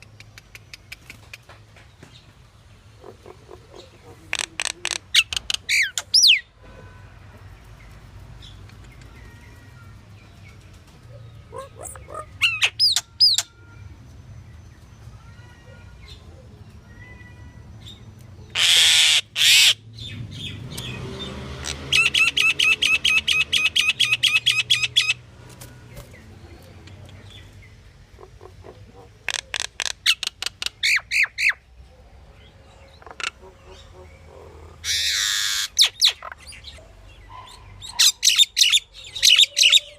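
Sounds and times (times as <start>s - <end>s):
bird chattering and whistling: 3.0s - 6.5s, 11.5s - 13.6s, 21.6s - 25.2s, 26.8s - 31.6s, 32.9s - 39.9s
harsh bird squawks: 3.0s - 6.5s, 11.5s - 13.6s, 18.5s - 19.8s, 21.6s - 25.2s, 28.2s - 31.6s, 33.0s - 39.9s.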